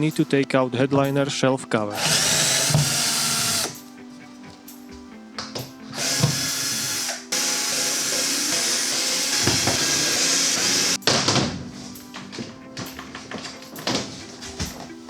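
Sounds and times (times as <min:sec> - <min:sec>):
cordless drill running: 0:01.9 - 0:03.8, 0:06.0 - 0:11.0.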